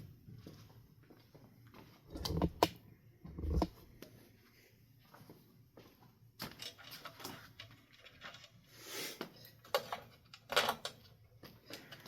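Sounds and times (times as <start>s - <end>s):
clicks of metal parts and screws: 6.5s - 8.6s, 9.3s - 12.0s.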